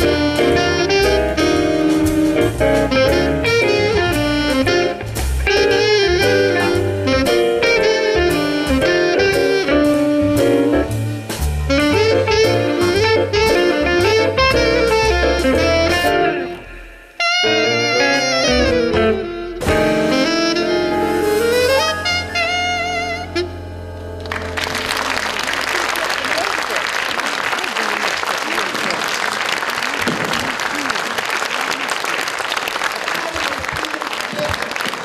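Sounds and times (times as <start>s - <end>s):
saxophone melody: 0.0s - 26.5s
piano accompaniment: 0.0s - 26.6s
audience applause: 24.2s - 35.0s.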